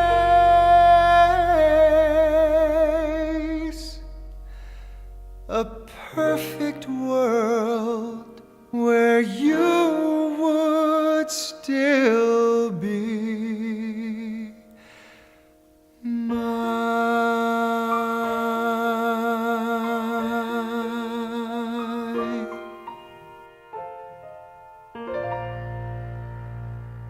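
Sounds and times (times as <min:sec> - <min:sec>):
long held chord: 0:00.0 - 0:11.1
wordless singing with vibrato: 0:00.0 - 0:15.2, 0:16.0 - 0:23.2.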